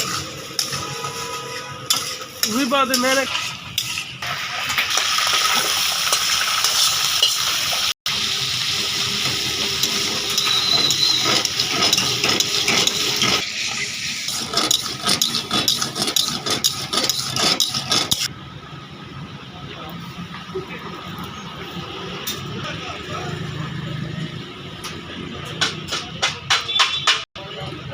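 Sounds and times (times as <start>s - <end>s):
food sizzling in hot oil: 0.0s - 18.3s.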